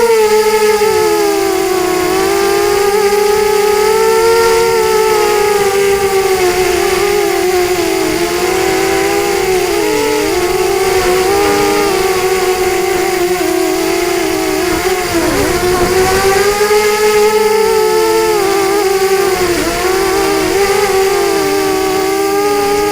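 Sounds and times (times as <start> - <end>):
quadcopter motors whining: 0.0 - 22.9.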